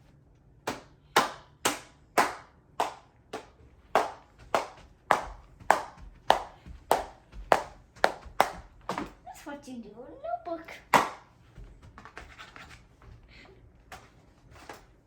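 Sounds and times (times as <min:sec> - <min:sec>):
hand claps: 0:00.7 - 0:08.7, 0:10.9 - 0:11.3.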